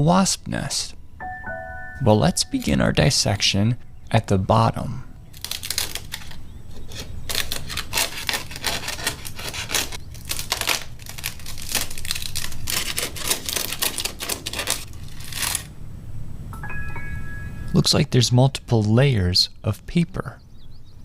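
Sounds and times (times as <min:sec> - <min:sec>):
papery wasp nest tearing: 0:05.3 - 0:15.7.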